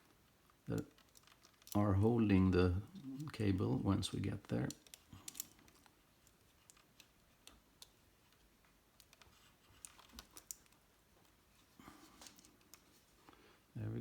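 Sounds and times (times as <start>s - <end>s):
faint cable clicks: 0.1s - 2.0s, 4.4s - 13.4s.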